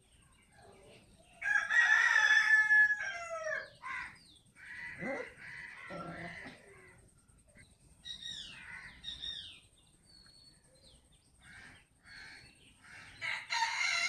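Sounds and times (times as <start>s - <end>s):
high animal calls: 3.8s - 7.0s.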